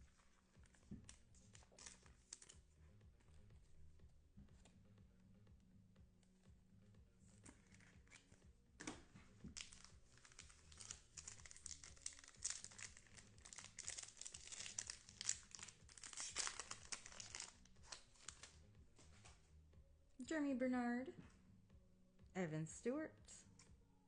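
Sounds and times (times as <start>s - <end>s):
wrapper tearing and crinkling: 1.5s - 2.6s, 9.6s - 18.5s.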